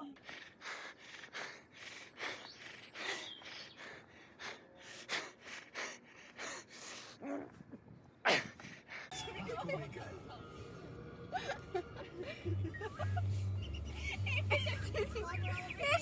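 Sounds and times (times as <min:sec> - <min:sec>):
heavy breathing puffs: 0:00.0 - 0:09.2.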